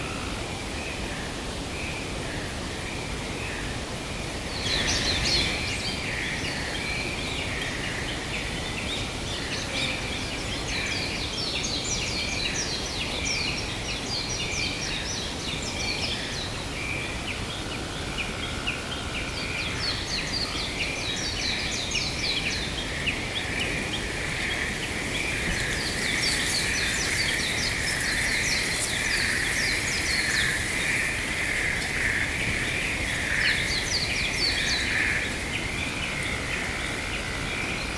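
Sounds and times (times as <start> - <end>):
birds chirping and calling: 21.2 - 37.9.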